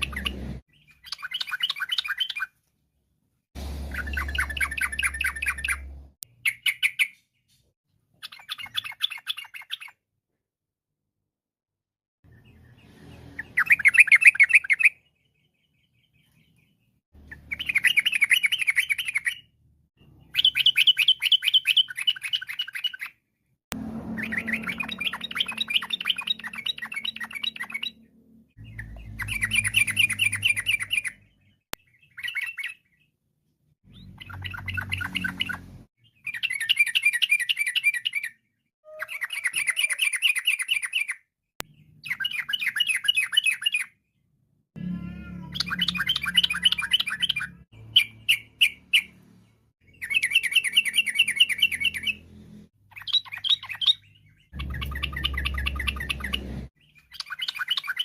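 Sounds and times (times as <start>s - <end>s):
bird singing chattering phrases: 0.0s - 2.5s, 24.2s - 33.0s, 33.9s - 38.3s, 52.9s - 58.0s.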